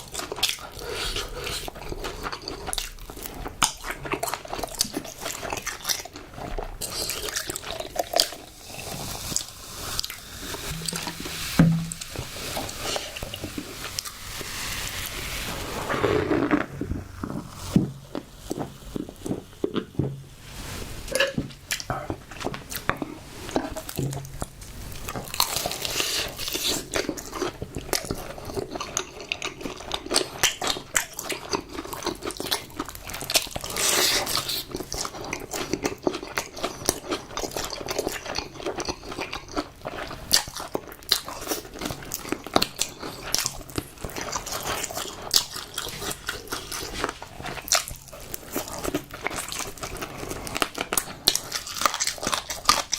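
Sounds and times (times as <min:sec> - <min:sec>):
crunching fried chicken: 0:21.6 - 0:52.9.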